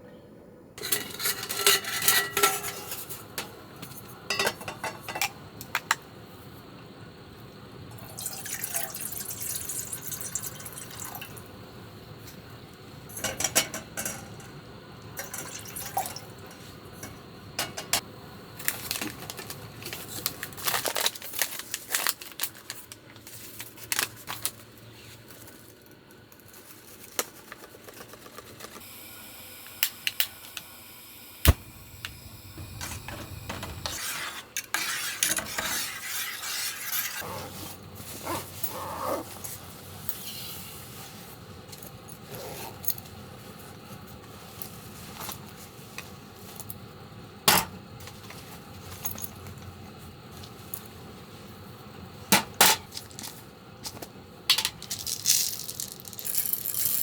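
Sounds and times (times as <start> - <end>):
cookware and utensils clinking: 0.8 - 3.6, 4.3 - 6.0, 13.1 - 14.5, 15.2 - 18.0.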